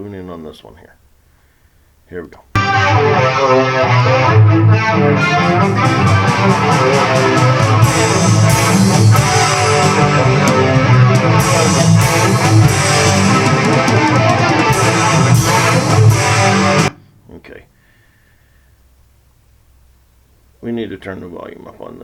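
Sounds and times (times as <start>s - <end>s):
bass guitar: 2.6s - 17.0s
strummed electric guitar: 2.6s - 17.0s
quiet drums: 4.7s - 17.8s.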